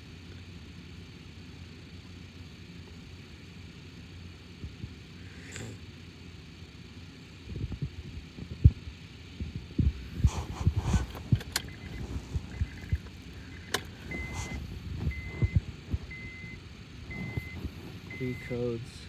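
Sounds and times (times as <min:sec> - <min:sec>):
low handling thumps and clicks: 0:07.5 - 0:18.2.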